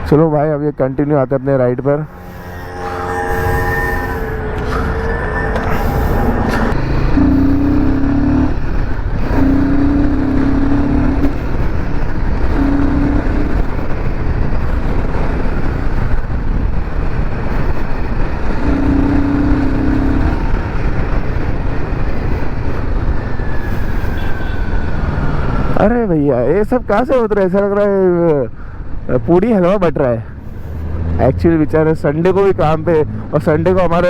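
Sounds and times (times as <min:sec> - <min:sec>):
wind rushing over microphone: 0:01.2 - 0:27.2
steady humming tone: 0:01.7 - 0:21.2
motorcycle engine running: 0:02.1 - 0:22.7.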